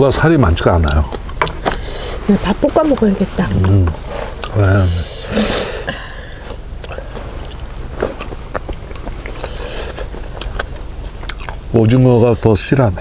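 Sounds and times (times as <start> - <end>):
person chewing food: 0.4 - 12.0
breathy rush of noise: 4.0 - 7.4.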